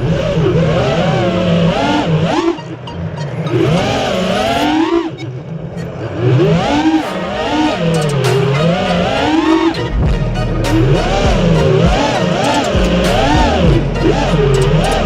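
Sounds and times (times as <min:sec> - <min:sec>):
radio-controlled car motor revving: 0:03.3 - 0:15.0.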